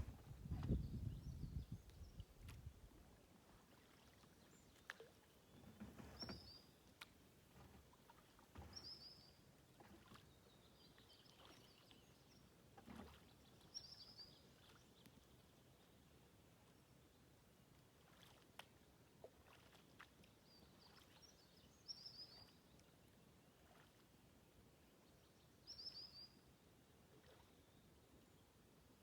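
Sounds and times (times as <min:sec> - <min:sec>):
paddle splashing in water: 0:03.3 - 0:15.0, 0:17.9 - 0:21.3.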